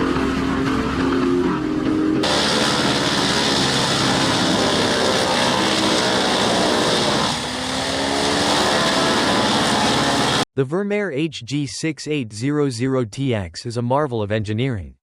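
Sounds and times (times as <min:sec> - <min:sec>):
grinder machine droning: 0:00.0 - 0:10.4.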